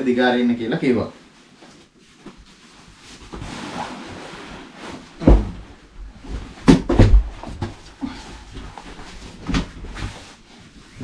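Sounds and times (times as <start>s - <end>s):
mattress rustling: 1.2s - 11.0s
dull thumps: 5.2s - 7.9s.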